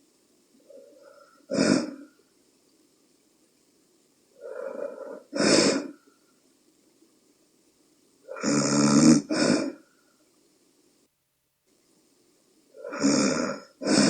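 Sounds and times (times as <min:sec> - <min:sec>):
woman snoring: 0:08.3 - 0:09.8, 0:12.8 - 0:14.0.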